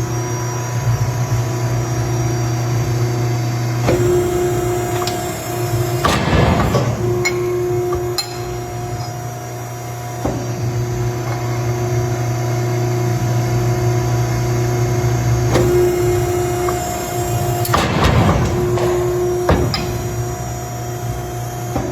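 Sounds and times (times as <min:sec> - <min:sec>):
pump motor humming: 0:00.0 - 0:21.9
heavy thump punching steel: 0:03.9 - 0:09.3, 0:15.5 - 0:21.9.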